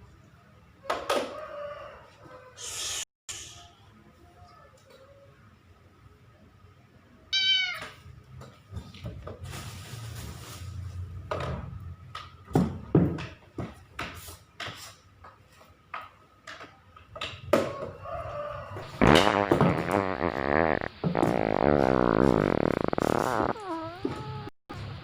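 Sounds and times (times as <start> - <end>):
rustling: 9.4 - 11.0.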